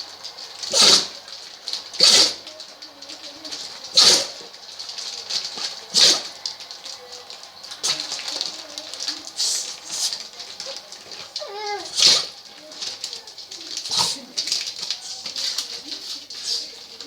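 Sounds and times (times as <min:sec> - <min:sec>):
dog sneezing: 0:00.7 - 0:01.2, 0:02.0 - 0:02.4, 0:03.9 - 0:04.5, 0:05.9 - 0:06.3, 0:11.4 - 0:12.4, 0:13.8 - 0:14.3.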